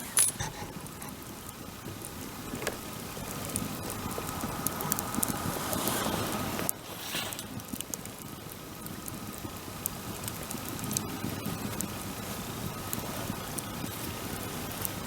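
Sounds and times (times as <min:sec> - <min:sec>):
bonfire hissing: 0:00.0 - 0:15.0
wood crackling and popping: 0:00.0 - 0:15.0.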